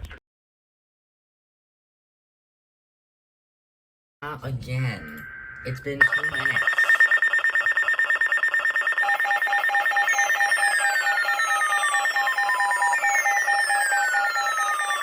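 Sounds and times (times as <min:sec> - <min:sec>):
high warbling alarm tone: 0:04.9 - 0:15.0
low pulsing beep: 0:05.0 - 0:15.0.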